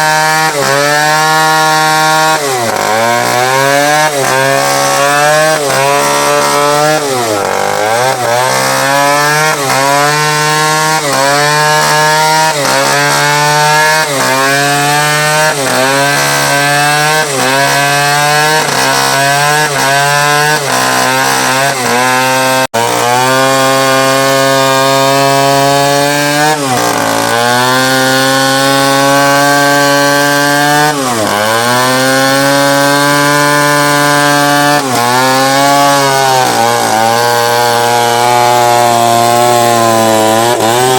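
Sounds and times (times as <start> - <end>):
chainsaw cutting through wood: 0.0 - 40.9.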